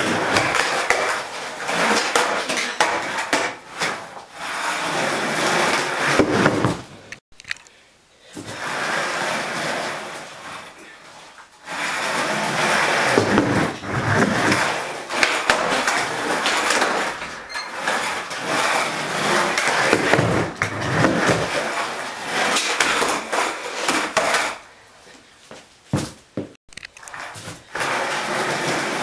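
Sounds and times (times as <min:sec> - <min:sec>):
skateboard clacking on floor: 0:00.0 - 0:04.0, 0:12.6 - 0:24.6
skateboard wheels rolling on concrete: 0:00.0 - 0:07.2, 0:08.4 - 0:29.0.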